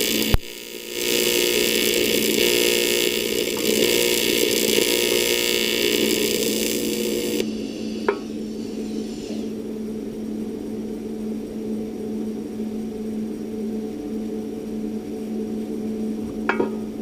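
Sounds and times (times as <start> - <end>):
welding machine hum: 0.0 - 8.6
welding arc buzzing: 0.0 - 9.6
faint hiss: 5.0 - 9.6.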